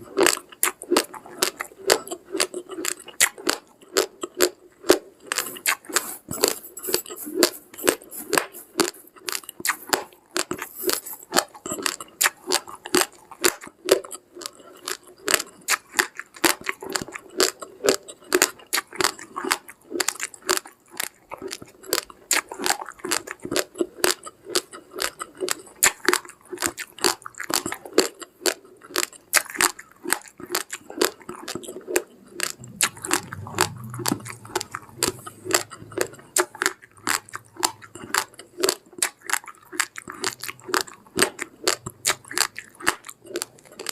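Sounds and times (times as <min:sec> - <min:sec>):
chewing crunchy rice: 0:00.0 - 0:43.9
faint low hum: 0:31.6 - 0:39.0.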